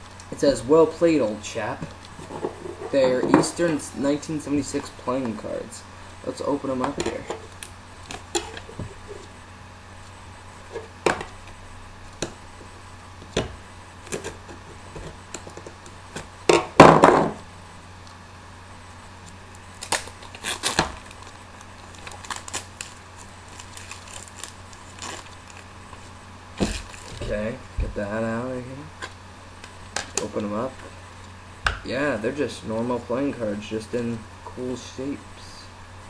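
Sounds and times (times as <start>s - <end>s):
packaging rustling: 19.8s - 27.5s.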